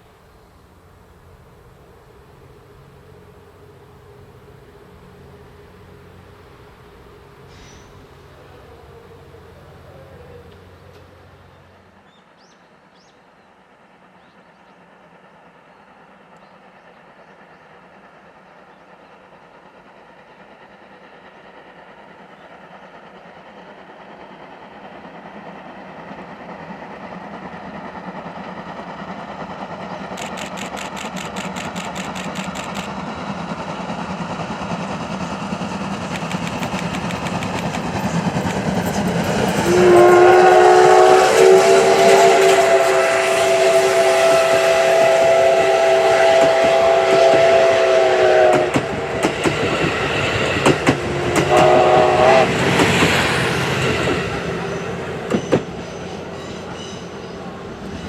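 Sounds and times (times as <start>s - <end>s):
steam locomotive running: 0.0s - 58.0s
steam whistle blowing: 39.6s - 48.8s, 51.1s - 52.9s.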